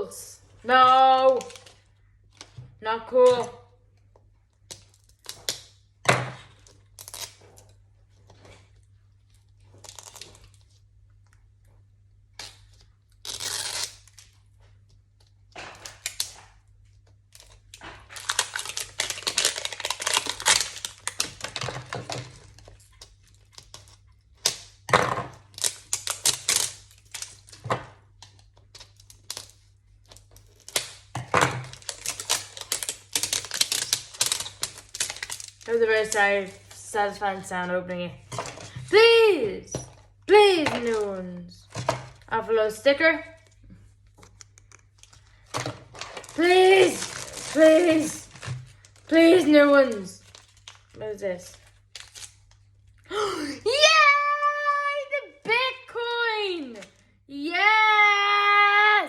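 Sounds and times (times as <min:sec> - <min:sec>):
plastic packaging crinkling: 0:12.5 - 0:37.2, 0:43.4 - 0:53.9.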